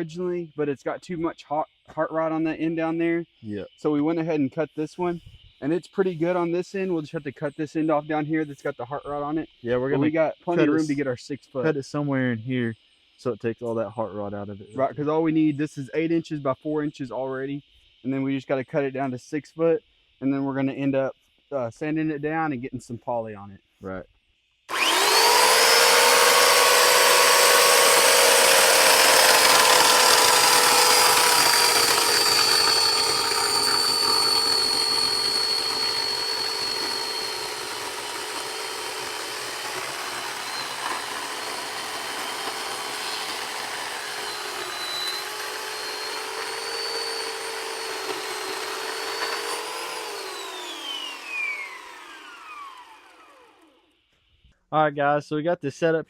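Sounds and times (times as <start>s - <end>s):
power tool motor running: 24.7s - 53.9s.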